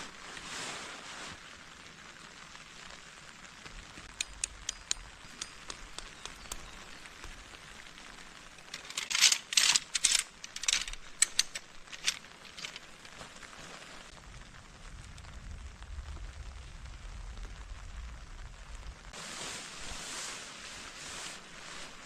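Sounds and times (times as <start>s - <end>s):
steady rain hiss: 0.0s - 22.0s
raindrop ticks: 2.4s - 13.4s.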